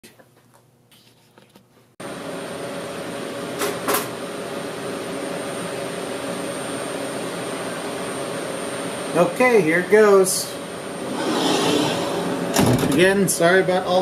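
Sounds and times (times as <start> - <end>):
high whine: 11.0 - 13.1.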